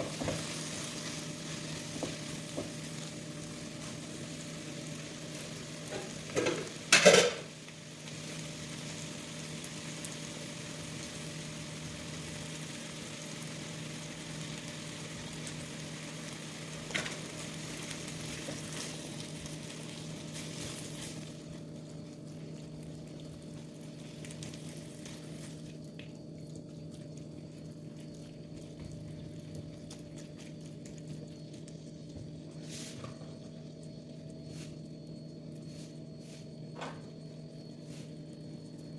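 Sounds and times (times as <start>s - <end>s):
food sizzling in frying pan: 0.0s - 30.0s.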